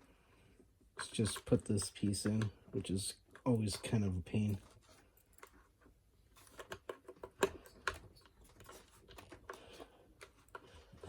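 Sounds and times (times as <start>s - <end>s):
faint plastic clicks and taps: 0.9s - 4.7s.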